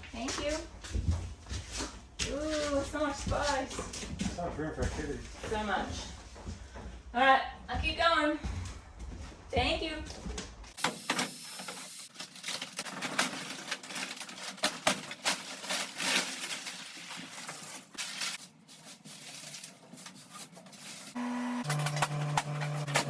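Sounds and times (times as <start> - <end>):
knocks and clicks of demolition: 12.1 - 18.4.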